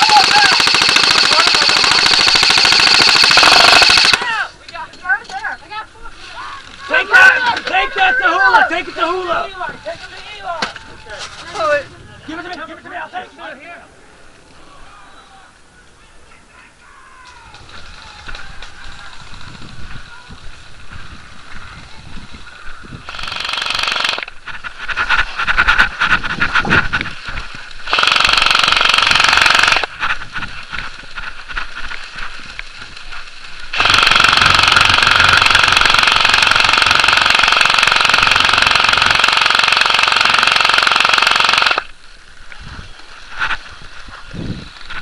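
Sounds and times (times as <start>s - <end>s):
airsoft guns firing bursts: 0.0s - 4.3s, 23.0s - 24.3s, 27.9s - 29.9s, 33.7s - 41.9s.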